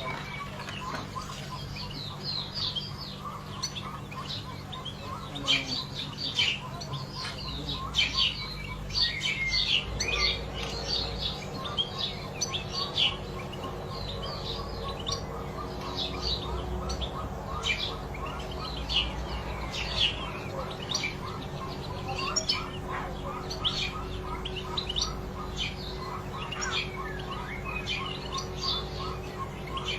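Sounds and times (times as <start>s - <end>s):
goldfinch twittering chirps: 0.0s - 29.9s
steady low hum: 0.0s - 29.9s.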